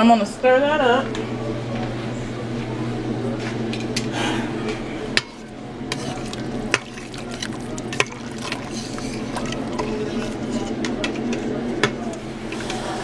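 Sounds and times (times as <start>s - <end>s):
steady low hum: 0.0s - 13.0s
spoon stirring in a pot: 5.2s - 11.4s.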